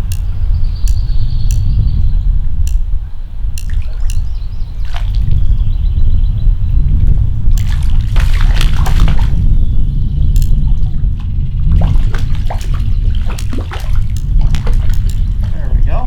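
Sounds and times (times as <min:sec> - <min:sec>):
steady low rumble: 0:00.0 - 0:16.0
creek water splashing: 0:03.6 - 0:05.6, 0:07.5 - 0:09.6, 0:10.4 - 0:15.8.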